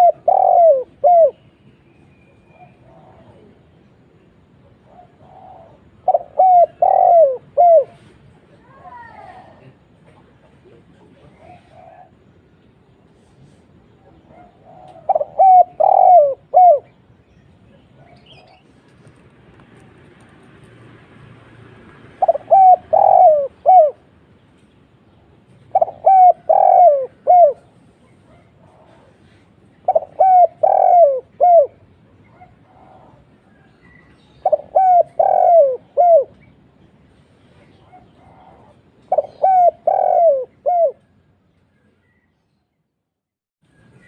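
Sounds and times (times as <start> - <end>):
dove cooing: 0.0 - 1.4, 2.5 - 3.6, 4.8 - 8.1, 11.1 - 12.3, 14.1 - 17.0, 22.2 - 24.1, 25.6 - 36.5, 37.7 - 41.2.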